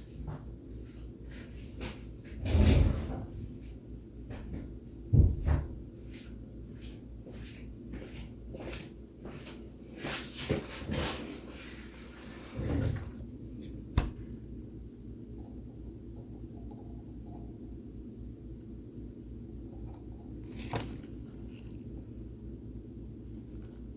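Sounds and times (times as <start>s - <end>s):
steady low hum: 0.0s - 23.9s
heavy thumps: 13.9s - 14.4s.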